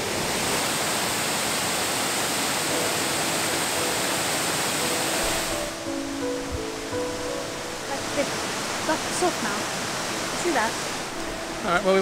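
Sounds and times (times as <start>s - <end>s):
waterfall rushing: 0.0s - 12.0s
faint music: 10.4s - 12.0s.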